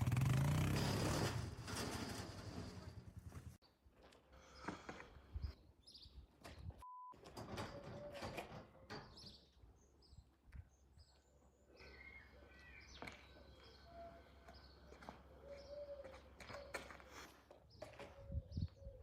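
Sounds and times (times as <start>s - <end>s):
faint birds chirping: 3.6s - 7.1s, 8.8s - 19.0s.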